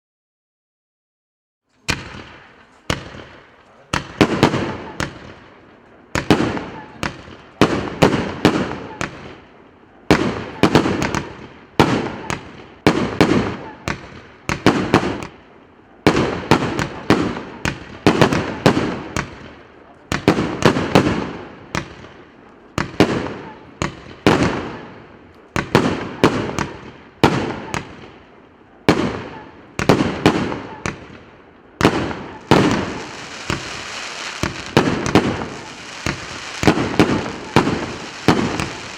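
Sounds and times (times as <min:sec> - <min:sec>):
firework cake bangs with echo: 0:01.8 - 0:05.5, 0:10.1 - 0:15.4, 0:28.8 - 0:38.9.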